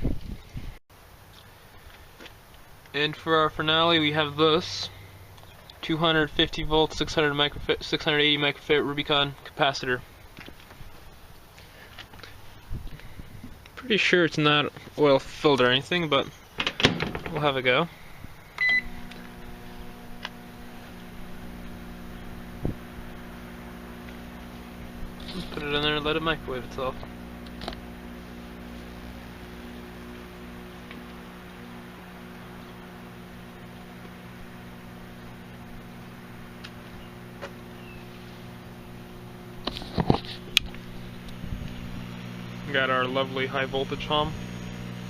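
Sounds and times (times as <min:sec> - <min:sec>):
cooling fan: 0:17.0 - 0:45.0
microwave oven hum: 0:17.4 - 0:45.0.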